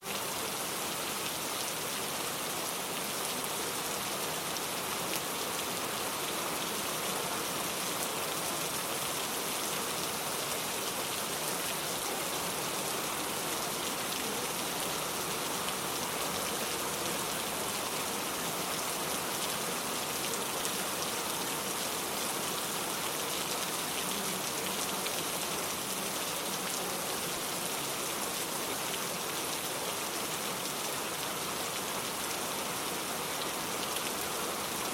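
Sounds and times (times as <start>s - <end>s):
steady rain: 0.0s - 34.9s.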